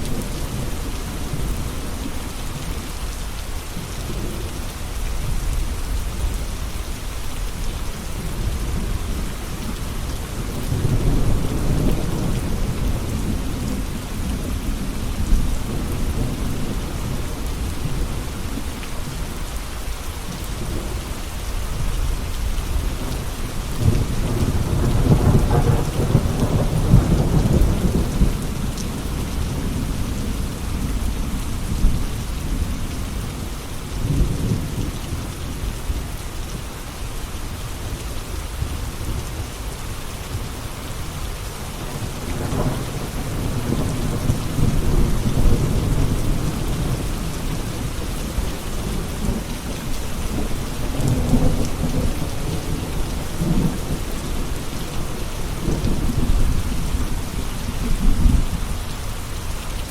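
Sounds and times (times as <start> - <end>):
heavy rain: 0.0 - 59.9
low rolling thunder: 8.2 - 18.6, 22.1 - 35.6, 41.8 - 58.6.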